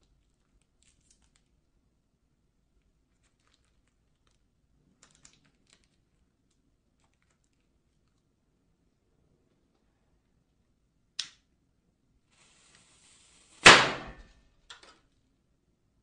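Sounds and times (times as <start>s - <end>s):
faint clicks and rustles: 0.0s - 1.7s, 2.8s - 8.4s.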